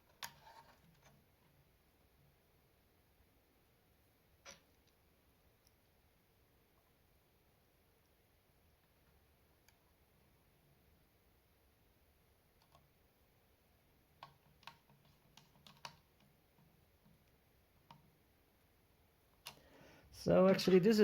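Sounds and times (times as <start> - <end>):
faint clicks and taps: 14.1 - 18.2.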